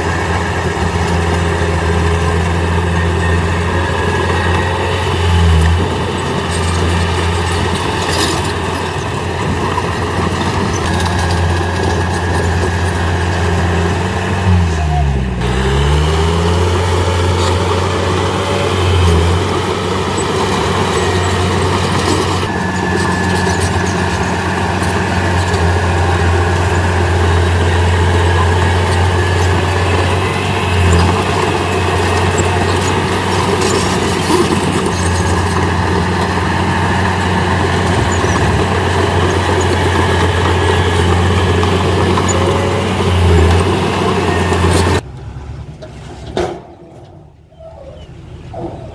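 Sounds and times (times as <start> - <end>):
heavy machinery diesel engine: 0.0 - 47.5.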